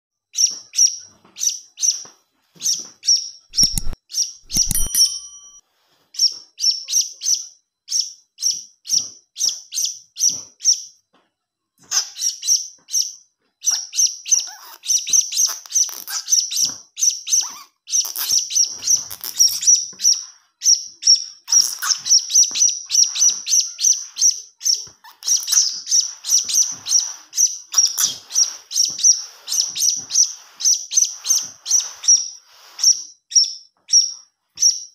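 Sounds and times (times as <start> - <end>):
parrot high-pitched chirps: 2.6 - 5.5, 11.9 - 34.9.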